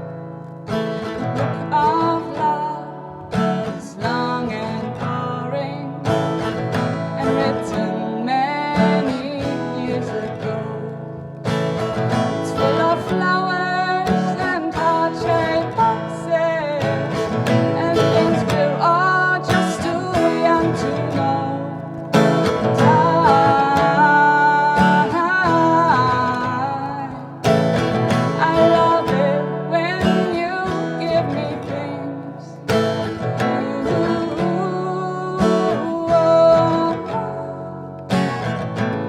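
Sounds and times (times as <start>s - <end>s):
guitar: 0.0s - 39.0s
person singing: 1.4s - 38.6s.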